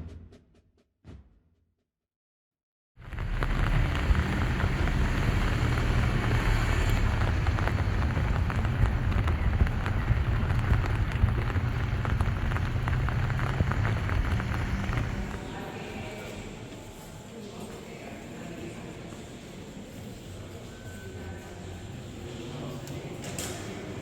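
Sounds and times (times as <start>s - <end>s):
heavy rain pouring: 3.0s - 15.7s.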